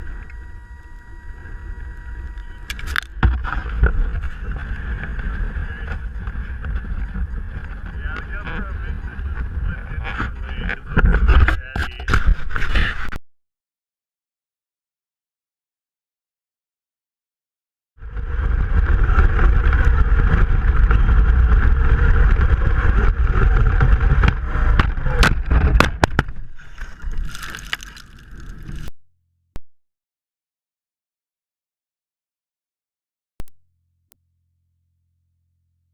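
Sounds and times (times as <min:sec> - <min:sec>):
drivetrain whine: 0:00.0 - 0:13.1, 0:18.0 - 0:29.0
wind rumble on microphone: 0:00.0 - 0:13.1, 0:18.0 - 0:28.9.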